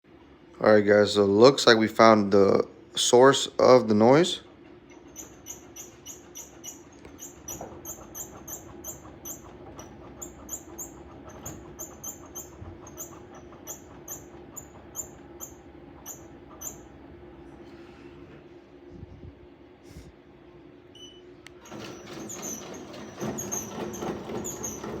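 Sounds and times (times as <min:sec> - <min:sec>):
embroidery machine humming: 0:01.3 - 0:17.7
high-pitched squeak: 0:04.9 - 0:16.9, 0:21.7 - 0:25.0.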